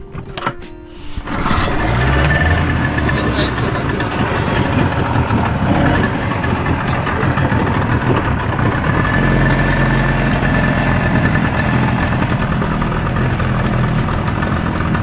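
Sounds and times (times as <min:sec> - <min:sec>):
boat motor running steadily: 0:01.3 - 0:15.0.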